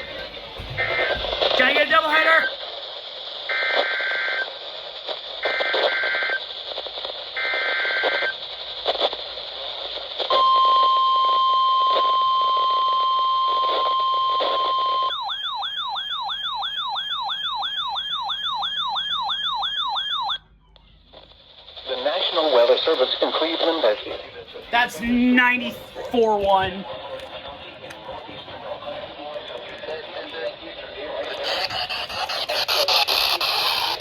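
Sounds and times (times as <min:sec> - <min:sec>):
radio hiss: 0:00.0 - 0:10.4, 0:21.1 - 0:34.0
steady alarm tone: 0:14.1 - 0:20.4, 0:31.3 - 0:34.0
fast warbling alert tone: 0:31.3 - 0:34.0
screeching digital data tones: 0:31.3 - 0:34.0.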